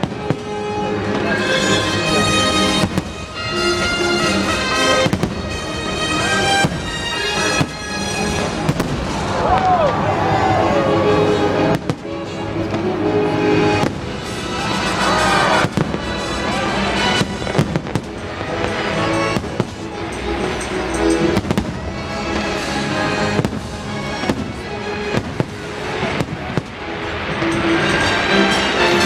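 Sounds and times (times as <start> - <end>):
fireworks bursting: 0.0 - 29.0
show music over loudspeakers: 11.4 - 29.0.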